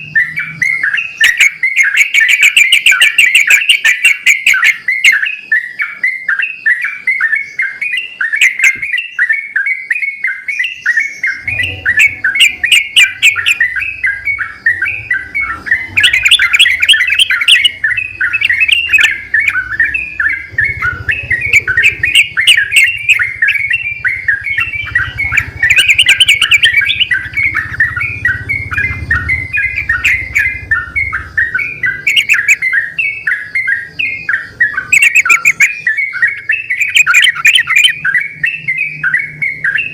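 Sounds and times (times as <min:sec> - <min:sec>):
birds singing and chattering: 0:00.0 - 0:39.9.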